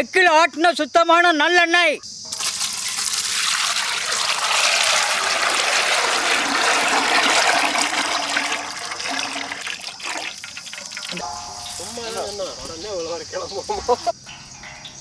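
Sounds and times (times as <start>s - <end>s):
oil pouring into a vessel: 2.3s - 11.2s.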